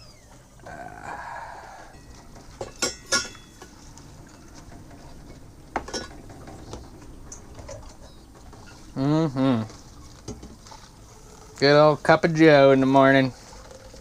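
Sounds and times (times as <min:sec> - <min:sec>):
dishes clinking: 0:01.9 - 0:08.8.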